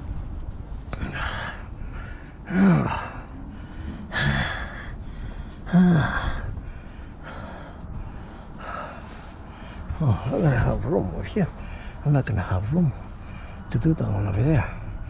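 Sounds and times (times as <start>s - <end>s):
man gasping and groaning: 2.4s - 7.9s.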